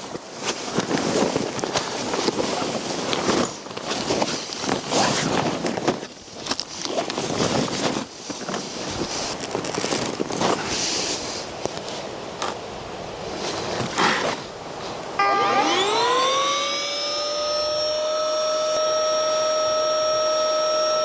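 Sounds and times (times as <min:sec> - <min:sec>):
clicks and rustles: 0:00.1 - 0:10.8.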